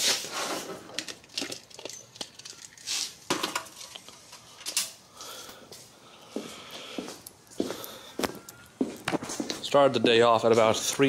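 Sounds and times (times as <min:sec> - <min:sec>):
metallic clinks and clatter: 0:00.9 - 0:02.9.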